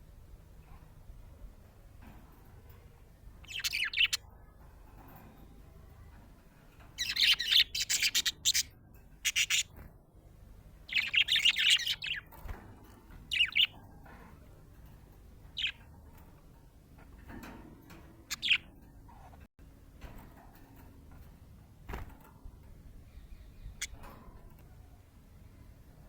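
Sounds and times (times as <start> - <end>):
budgerigar chirping: 3.4 - 4.2, 7.0 - 8.7, 9.3 - 9.7, 10.9 - 12.2.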